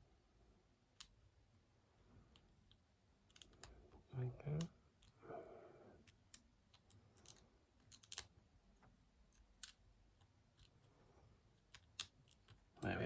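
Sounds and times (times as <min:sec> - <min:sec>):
metallic clicks of lock picking: 0:02.3 - 0:03.8, 0:06.0 - 0:08.3.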